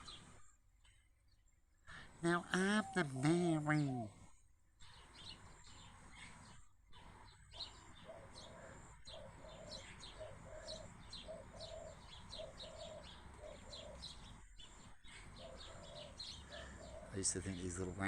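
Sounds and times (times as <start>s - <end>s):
sparrows chirping: 0.0s - 18.0s
low cooing: 8.0s - 14.3s, 15.4s - 17.3s.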